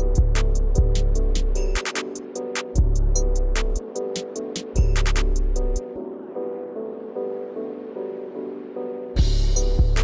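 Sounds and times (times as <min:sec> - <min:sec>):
drum beat with deep bass: 0:00.0 - 0:05.8, 0:09.2 - 0:10.0
repeating chord pattern: 0:00.0 - 0:10.0.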